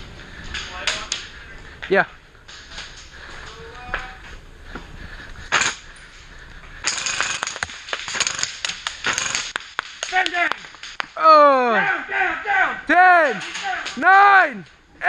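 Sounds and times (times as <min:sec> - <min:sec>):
airsoft gunshots: 0:05.5 - 0:05.8, 0:06.8 - 0:11.0
pellets striking hard surfaces: 0:06.8 - 0:11.2.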